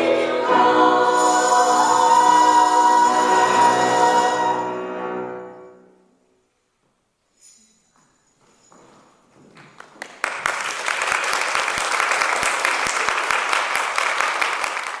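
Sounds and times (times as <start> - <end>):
audience applause: 9.8 - 15.0.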